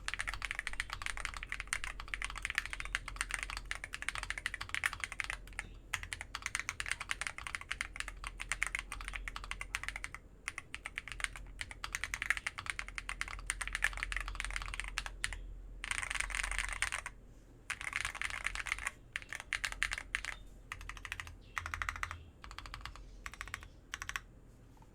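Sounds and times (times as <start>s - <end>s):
fast typing on mechanical keyboard: 0.0s - 17.1s, 17.7s - 24.3s.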